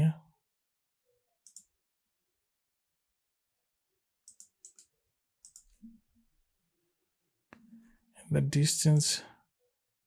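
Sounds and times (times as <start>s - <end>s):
faint computer mouse clicks: 1.4s - 1.8s, 4.2s - 5.9s.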